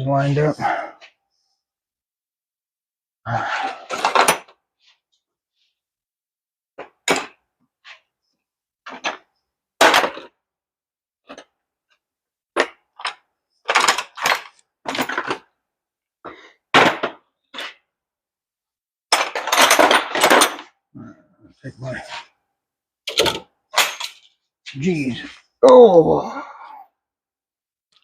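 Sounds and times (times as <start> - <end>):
metal tools clinking: 19.2 - 20.7, 23.1 - 24.3.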